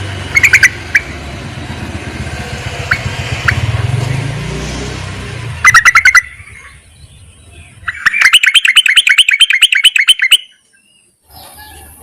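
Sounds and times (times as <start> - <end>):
bird chattering call: 0.3 - 1.2, 5.6 - 12.0.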